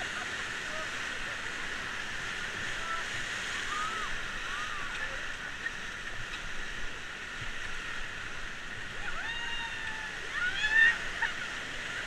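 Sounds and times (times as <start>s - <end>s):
river rapids rushing: 0.0s - 12.0s
people yelling: 8.9s - 11.5s.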